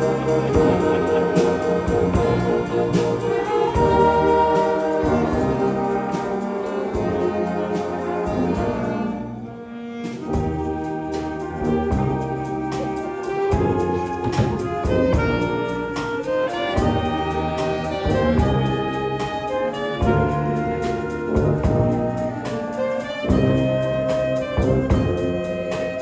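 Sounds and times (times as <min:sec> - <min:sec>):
steady drum beat: 0:00.0 - 0:26.0
wind band playing: 0:00.0 - 0:26.0.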